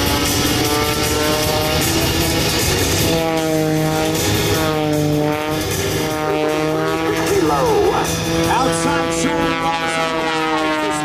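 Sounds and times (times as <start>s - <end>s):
propeller planes passing by: 0.0s - 11.0s.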